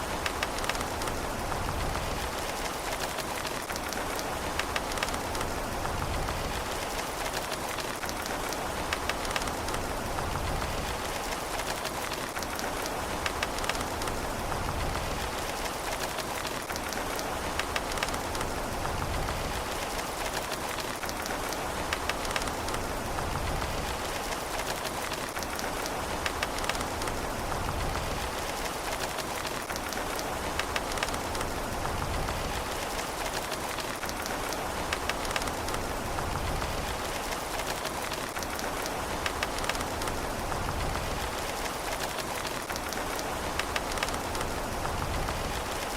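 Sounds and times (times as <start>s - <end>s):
raindrops clicking on surface: 0.0s - 45.9s
steady rain hiss: 0.0s - 45.9s.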